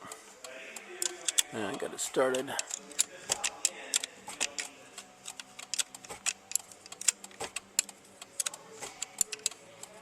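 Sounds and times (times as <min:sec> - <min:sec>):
wrench clicking on bolt: 0:01.0 - 0:01.5, 0:02.3 - 0:09.6.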